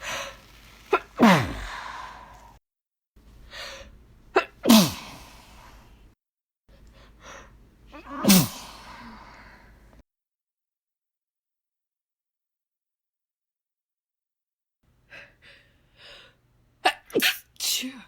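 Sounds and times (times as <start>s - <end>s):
woman sneezing: 0.9s - 1.9s, 4.4s - 5.2s, 8.0s - 9.0s, 16.8s - 18.0s.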